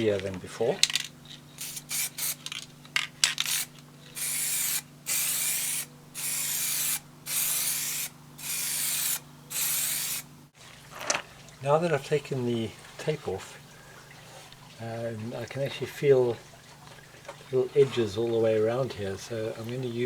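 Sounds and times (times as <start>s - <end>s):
aerosol spray can spraying: 1.6s - 2.5s, 3.4s - 10.3s.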